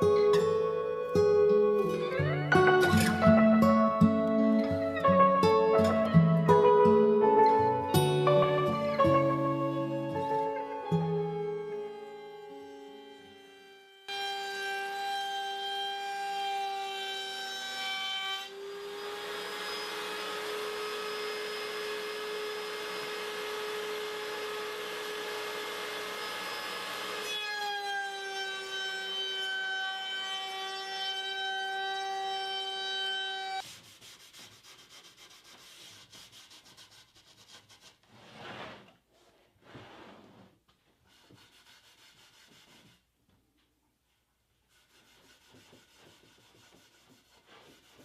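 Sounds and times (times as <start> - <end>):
woodworking machine whining: 10.9 - 33.6
saw rasping through wood: 44.7 - 48.0.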